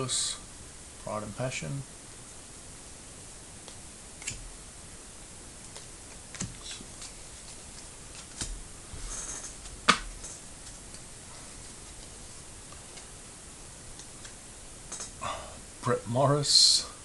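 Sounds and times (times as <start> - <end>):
cards clicking and tapping: 5.7 - 8.6
cards rustling: 5.7 - 8.6.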